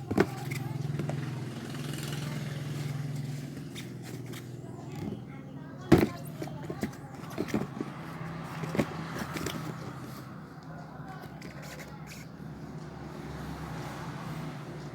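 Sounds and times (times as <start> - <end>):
handling rustling and clicks: 0.0 - 1.3, 5.9 - 12.3.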